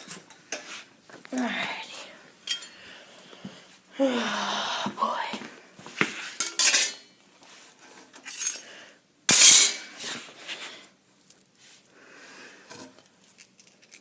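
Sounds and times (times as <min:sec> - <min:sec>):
loud metal clank: 0:09.3 - 0:09.9.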